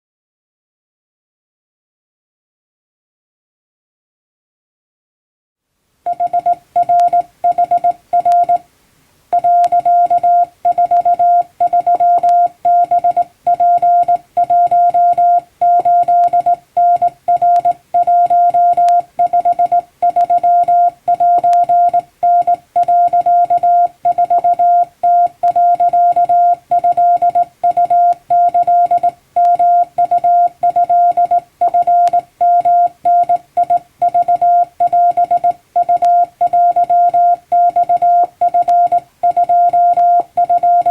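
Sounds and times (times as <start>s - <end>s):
morse code tone: 6.1s - 8.6s, 9.3s - 40.9s.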